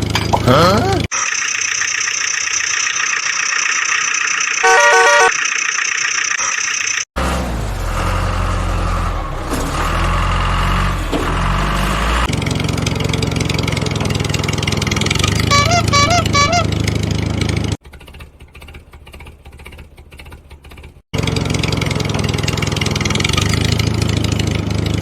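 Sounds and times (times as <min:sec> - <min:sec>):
toy engine running: 0:01.1 - 0:07.0, 0:15.5 - 0:16.7
steady electronic tone: 0:02.8 - 0:05.5
short beeping tune: 0:04.6 - 0:05.4, 0:15.5 - 0:16.7.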